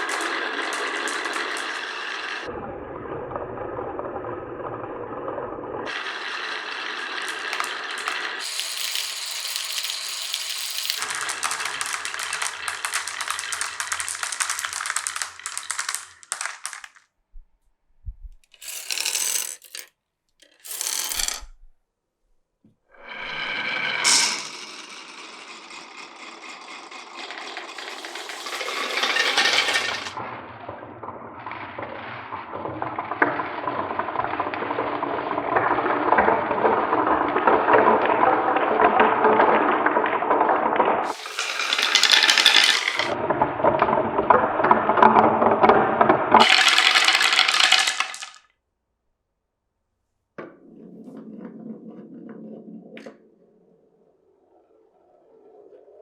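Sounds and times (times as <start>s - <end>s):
glass marbles rolling on tracks: 0.0s - 2.5s, 5.8s - 17.1s, 18.4s - 21.7s, 23.0s - 30.3s, 31.6s - 43.2s, 45.7s - 48.5s.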